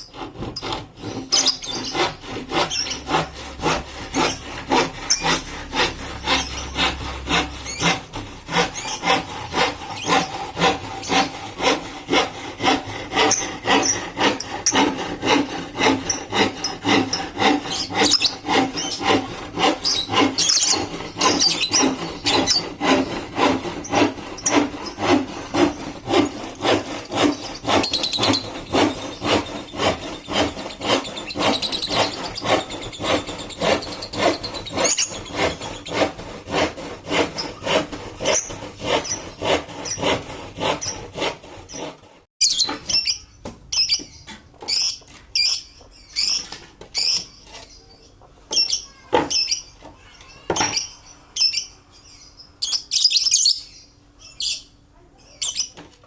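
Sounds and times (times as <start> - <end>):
lovebirds chirping: 0.0 - 3.4, 6.1 - 11.8, 12.8 - 36.2, 42.4 - 55.8
hand saw on wood: 0.0 - 42.3.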